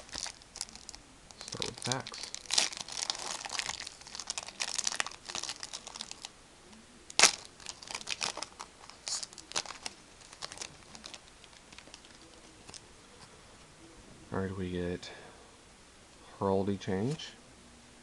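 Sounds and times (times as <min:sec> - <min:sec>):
foil wrapper crinkling: 0:00.0 - 0:06.3, 0:07.1 - 0:12.8
foil wrapper ripping: 0:00.0 - 0:06.3, 0:07.1 - 0:12.8.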